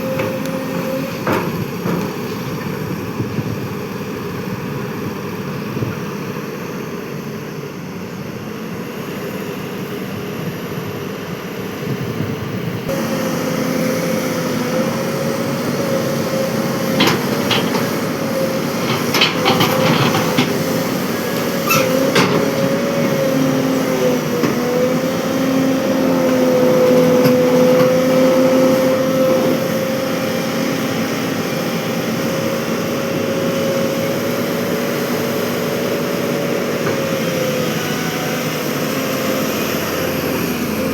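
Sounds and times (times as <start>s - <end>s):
excavator engine droning: 0.0s - 40.9s
sharp knocks and clanks: 17.0s - 18.0s, 18.8s - 20.7s.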